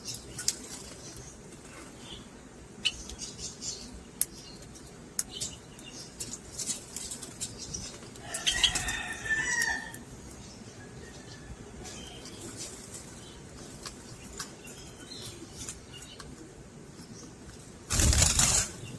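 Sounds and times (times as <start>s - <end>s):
birds fluttering wings: 0.0s - 2.0s, 17.4s - 18.9s.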